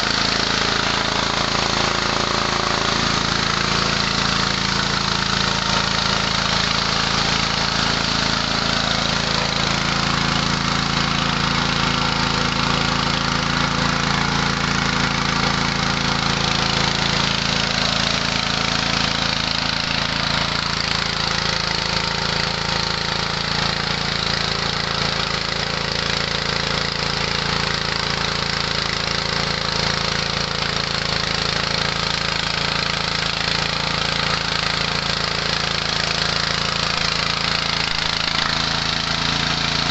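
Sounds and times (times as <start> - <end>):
milling machine whirring: 0.0 - 30.0
small petrol engine running: 0.0 - 39.9.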